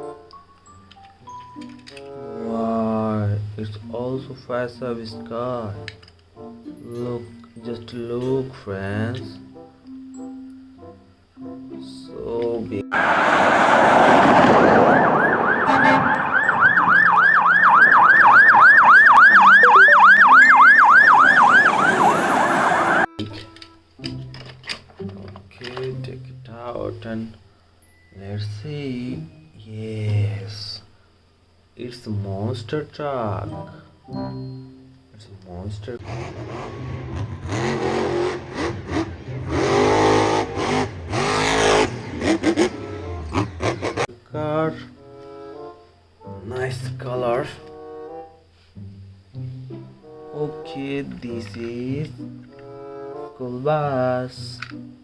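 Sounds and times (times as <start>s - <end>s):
car engine revving: 12.9s - 19.5s, 21.0s - 23.1s, 36.0s - 44.1s
toy siren yelping: 14.7s - 23.1s.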